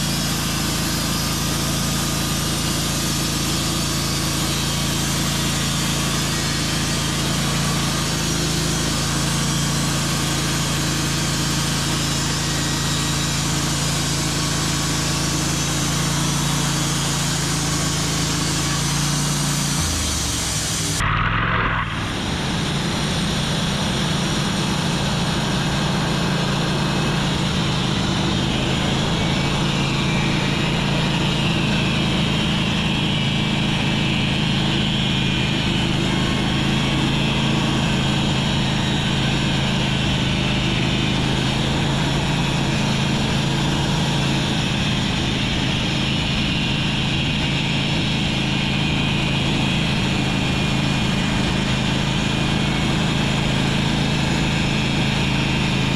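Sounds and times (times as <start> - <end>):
saw cutting through log: 0.0 - 21.1, 22.0 - 55.9
engine hum: 0.0 - 55.9.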